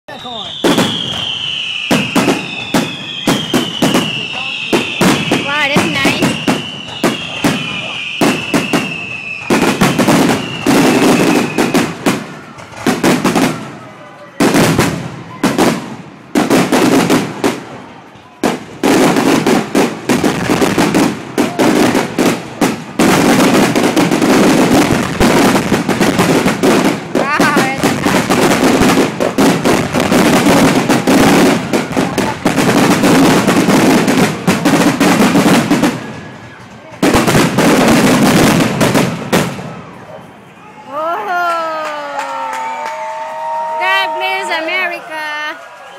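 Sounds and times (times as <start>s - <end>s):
high falling whistle: 0.1s - 5.4s, 6.1s - 12.6s
fireworks bangs: 0.1s - 45.5s
fireworks crackling: 0.1s - 45.9s.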